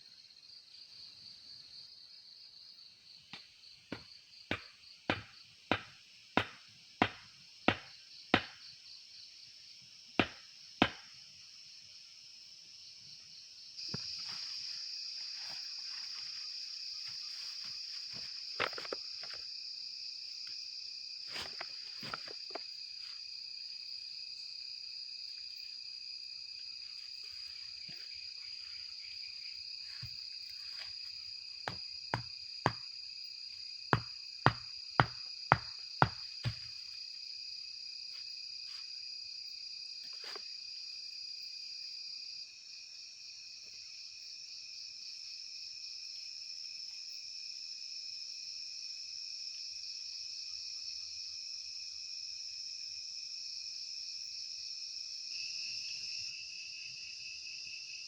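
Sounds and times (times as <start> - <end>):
crickets and insects droning: 0.0 - 58.0
sharp knocks: 34.0 - 36.6.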